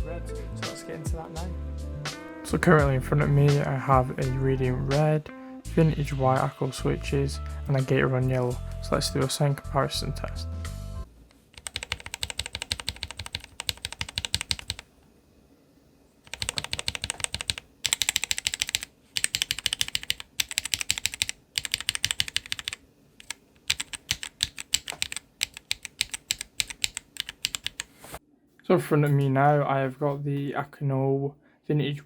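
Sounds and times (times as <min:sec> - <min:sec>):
mechanical keyboard clacking: 0:11.6 - 0:14.8, 0:16.3 - 0:27.9.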